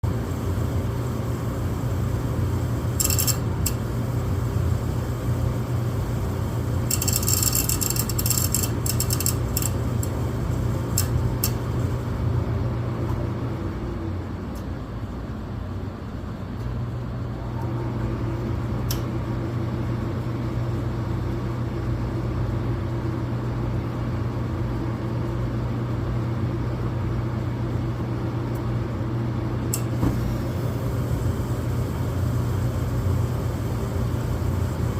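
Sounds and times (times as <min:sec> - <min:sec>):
furnace humming: 0:00.0 - 0:34.9
furnace burner clicks: 0:10.9 - 0:11.7, 0:18.8 - 0:19.1, 0:29.7 - 0:30.2.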